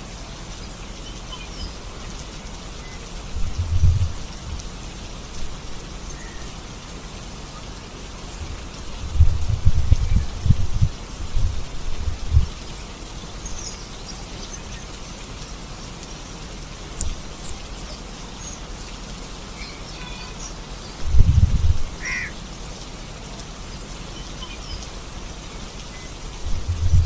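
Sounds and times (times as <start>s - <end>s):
steady rain falling: 0.0s - 27.0s
bird calls: 17.0s - 21.0s, 21.9s - 22.4s.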